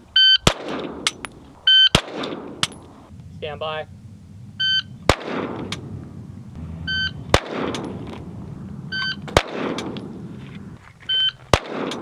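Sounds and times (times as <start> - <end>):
loud pistol shot echoing: 0.4 - 1.2, 1.9 - 2.7, 5.0 - 5.9, 7.3 - 8.0, 9.2 - 10.2, 11.5 - 12.0
shot timer beeps: 1.7 - 2.0, 4.6 - 4.9, 6.9 - 7.2, 8.9 - 9.2, 11.1 - 11.4.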